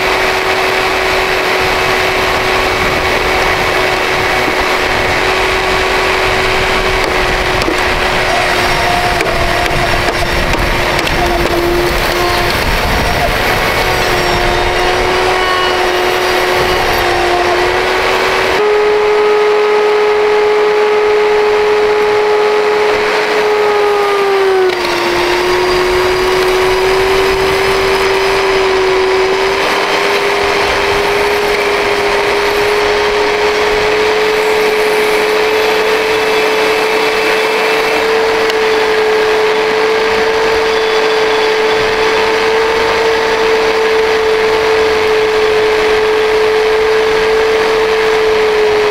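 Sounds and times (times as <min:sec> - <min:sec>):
vacuum cleaner motor whining: 0:00.0 - 0:48.9.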